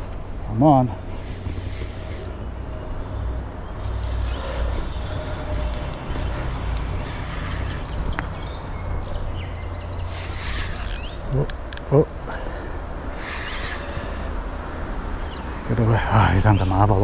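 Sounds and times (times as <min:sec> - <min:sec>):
low outdoor rumble: 0:00.0 - 0:17.0
light clicks and ticks: 0:03.8 - 0:07.0.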